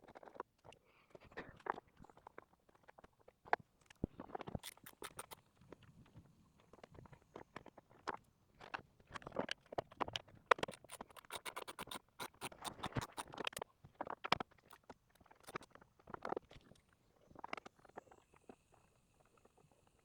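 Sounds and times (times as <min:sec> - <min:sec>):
hand ratchet clicking: 0:04.6 - 0:05.4, 0:10.6 - 0:13.6.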